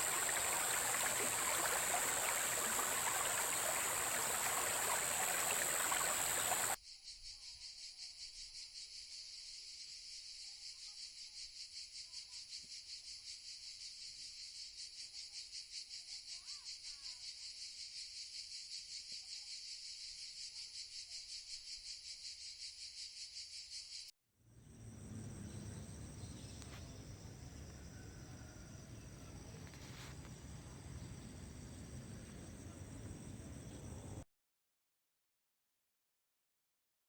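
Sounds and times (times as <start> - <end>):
faint bird chirps: 0.0 - 6.8, 24.6 - 34.2
pulsing insect chirr: 0.0 - 6.8, 21.7 - 34.2
rushing water: 0.0 - 6.8.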